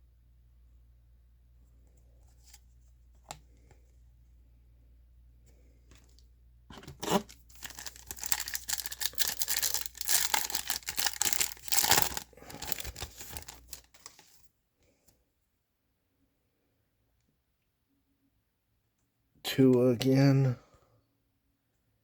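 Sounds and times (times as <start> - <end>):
plastic wrapper crinkling: 6.8 - 14.4
plastic wrapper tearing: 6.8 - 14.4.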